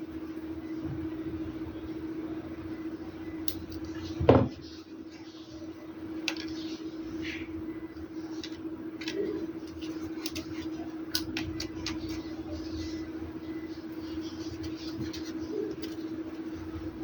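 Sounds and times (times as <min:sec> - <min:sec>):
steady hum: 0:00.0 - 0:17.0
dull thump: 0:04.2 - 0:04.6.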